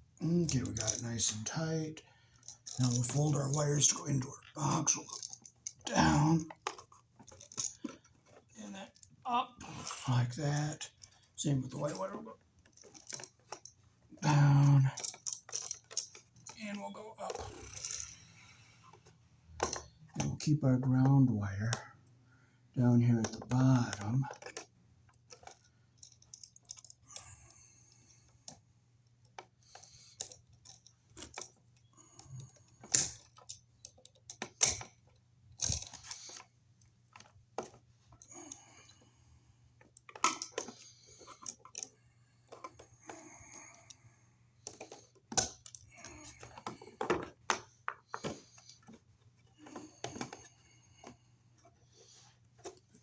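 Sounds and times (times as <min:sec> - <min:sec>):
wires clicking and scraping in box: 0:00.3 - 0:18.3, 0:22.8 - 0:27.4.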